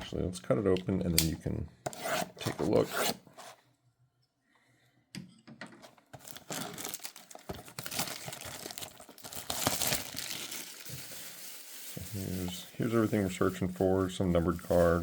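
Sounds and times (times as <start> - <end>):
packaging crinkling and tearing: 6.2 - 15.0.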